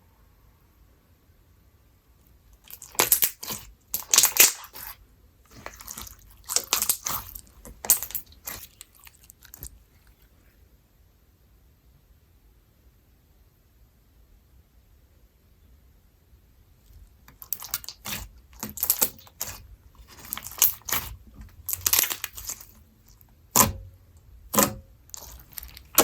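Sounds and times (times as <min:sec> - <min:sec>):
slime squished crunchy crackles: 0:02.6 - 0:09.7, 0:17.3 - 0:23.9, 0:24.5 - 0:26.0.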